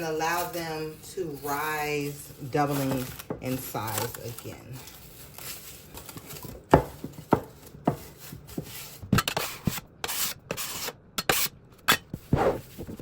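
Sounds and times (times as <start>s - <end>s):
plastic wrap crinkling: 0.0s - 9.1s.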